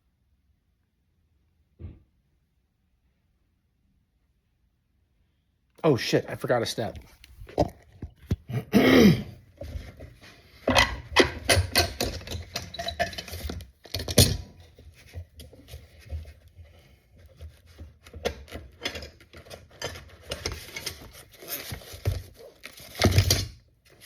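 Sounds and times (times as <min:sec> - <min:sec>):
tools and clamps knocking: 0:10.6 - 0:14.6.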